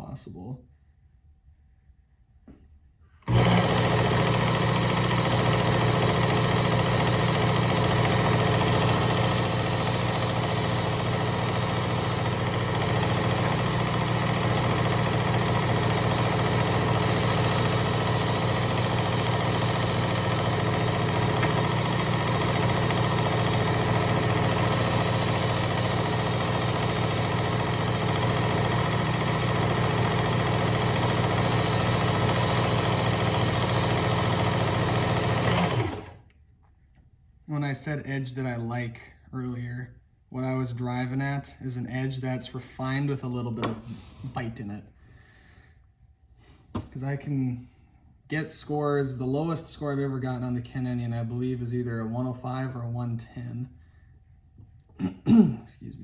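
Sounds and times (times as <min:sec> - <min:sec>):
belt sharpener running: 0:03.3 - 0:36.2.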